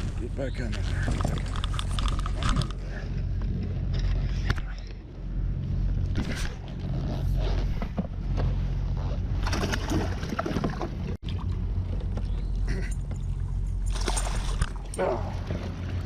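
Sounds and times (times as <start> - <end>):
steady low hum: 0.0 - 16.0
water splashing against boat: 9.3 - 16.0.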